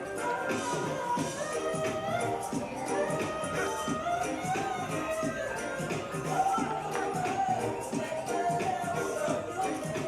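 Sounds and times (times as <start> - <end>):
music with steady beat: 0.0 - 10.0.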